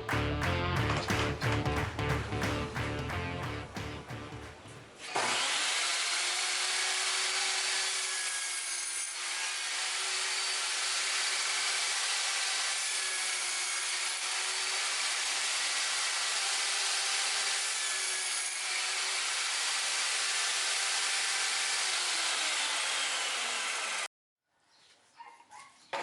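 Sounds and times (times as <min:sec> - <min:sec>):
table saw cutting wood: 0:05.0 - 0:24.1.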